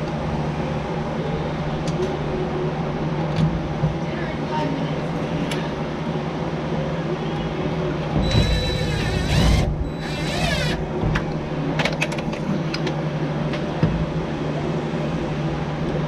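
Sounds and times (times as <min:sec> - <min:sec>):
steady low hum: 0:00.0 - 0:16.0
power drill motor whine: 0:08.2 - 0:10.9.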